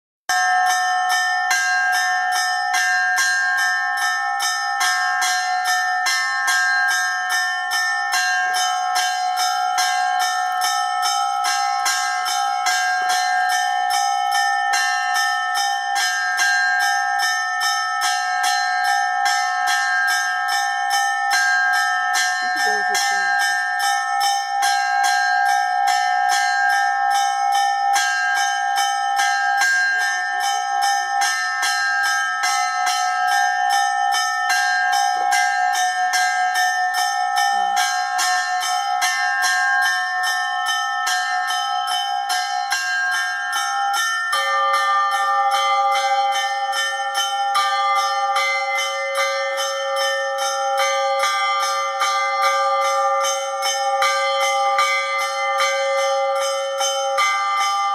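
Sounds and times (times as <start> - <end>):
lower church bell: 0.3 - 57.9
small church bells ringing: 0.3 - 57.9.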